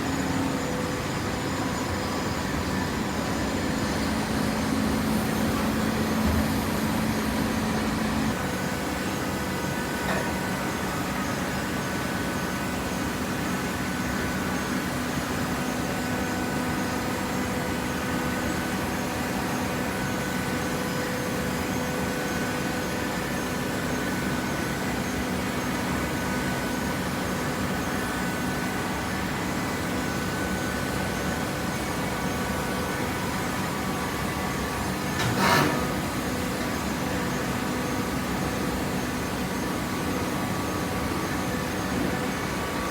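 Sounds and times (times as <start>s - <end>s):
hydraulic machine hum: 0.0s - 13.3s, 28.1s - 42.9s.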